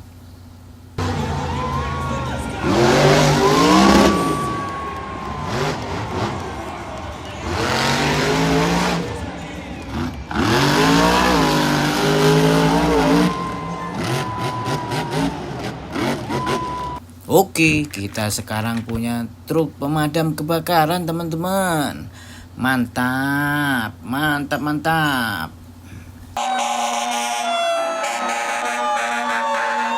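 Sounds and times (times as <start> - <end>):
engine revving: 1.0 - 17.0
tyre squeals: 1.6 - 8.6, 9.9 - 17.0.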